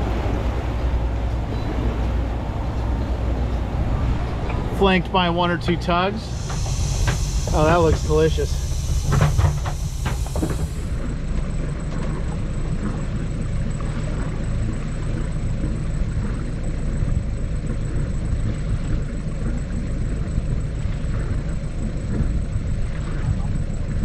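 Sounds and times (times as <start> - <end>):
rushing background noise: 0.0 - 11.3
boat engine running: 0.0 - 24.0.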